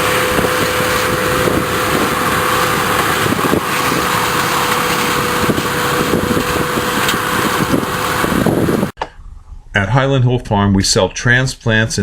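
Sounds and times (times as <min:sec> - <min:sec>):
machinery engine running: 0:00.0 - 0:09.0.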